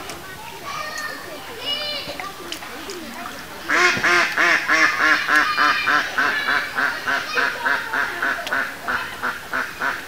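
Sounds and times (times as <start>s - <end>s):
duck quacking: 3.7s - 10.0s.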